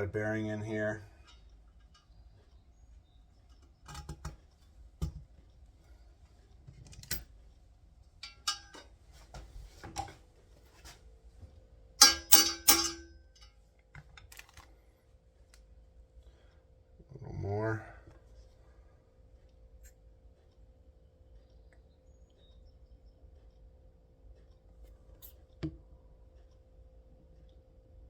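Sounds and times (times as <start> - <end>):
metallic clinks and taps: 8.2 - 8.9, 12.0 - 13.6.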